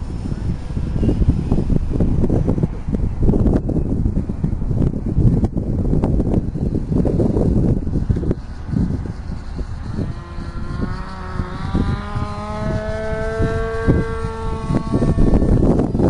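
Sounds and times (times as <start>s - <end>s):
wind buffeting microphone: 0.0s - 16.0s
model plane motor whining: 6.1s - 16.0s.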